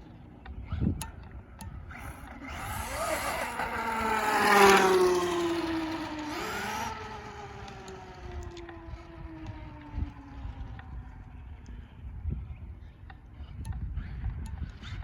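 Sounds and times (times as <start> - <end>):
electric motor whining: 1.8 - 11.6.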